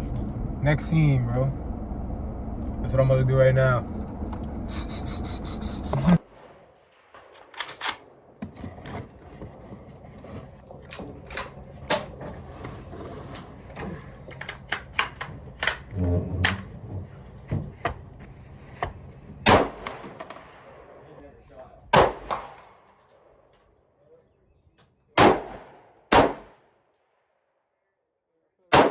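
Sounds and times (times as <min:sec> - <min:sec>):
gunshots: 0:19.4 - 0:21.0, 0:21.9 - 0:22.9, 0:25.2 - 0:26.6.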